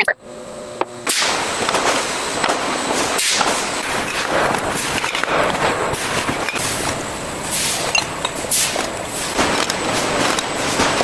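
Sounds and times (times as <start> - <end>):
factory machinery clatter: 1.0 - 11.0.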